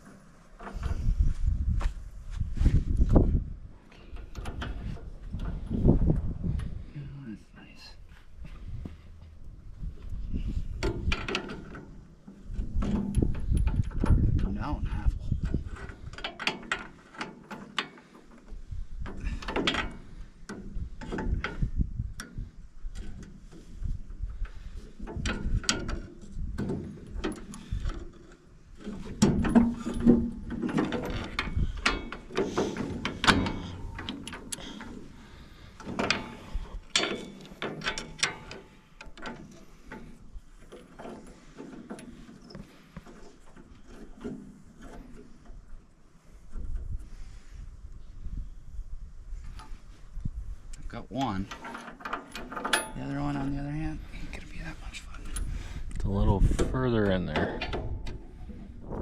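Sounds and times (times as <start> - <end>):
metal tools clanking on metal: 25.0 - 45.2, 51.2 - 54.3.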